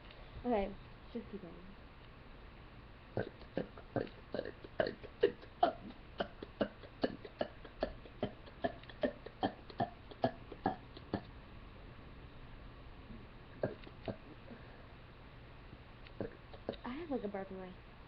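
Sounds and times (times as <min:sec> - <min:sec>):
person burping: 0:03.2 - 0:11.3, 0:13.6 - 0:14.2, 0:16.2 - 0:16.8.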